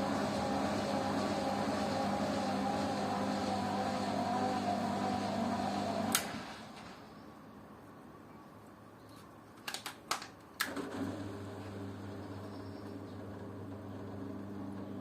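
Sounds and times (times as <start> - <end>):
washing machine motor humming: 0.0 - 6.8, 10.7 - 15.0.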